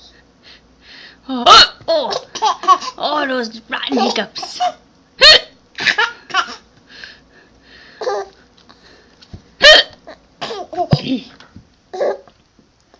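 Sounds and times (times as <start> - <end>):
person hiccuping: 9.6 - 10.6.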